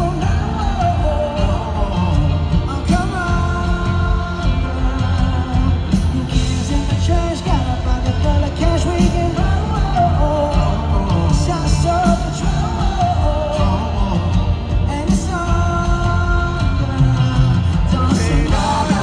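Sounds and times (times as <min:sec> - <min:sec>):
live pop band playing: 0:00.0 - 0:19.0
person singing: 0:00.0 - 0:19.0.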